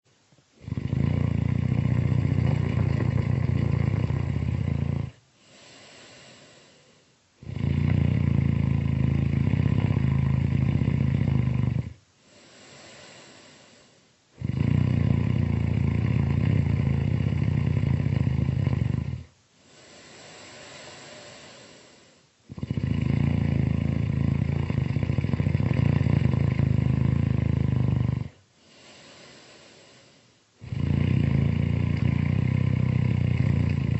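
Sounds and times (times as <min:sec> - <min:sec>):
loud buzzing snores: 0:00.6 - 0:33.9
breathy breaths: 0:05.2 - 0:07.3, 0:12.2 - 0:14.2, 0:19.5 - 0:23.0, 0:27.8 - 0:31.4.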